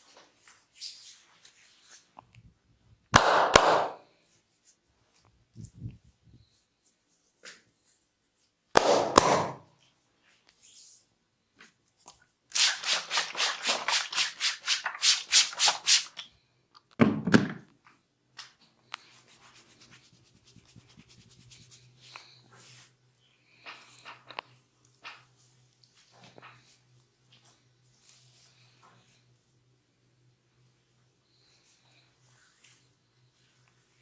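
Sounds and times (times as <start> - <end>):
hands rubbing briskly: 19.0 - 22.1.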